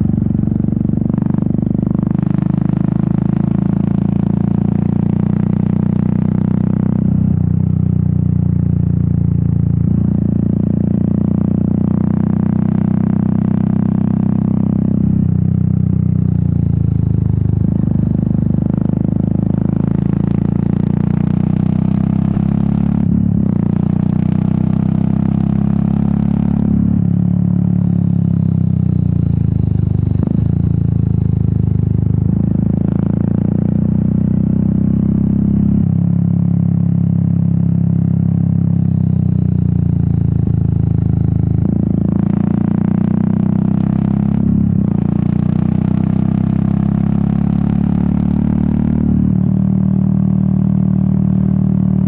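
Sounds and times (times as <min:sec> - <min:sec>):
motorcycle engine and exhaust: 0:00.0 - 0:52.0.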